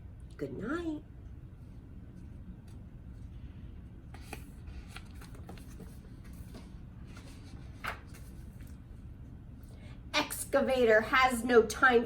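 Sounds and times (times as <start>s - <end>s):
low steady hum: 0.0s - 12.0s
paper pages rustling: 4.1s - 8.8s.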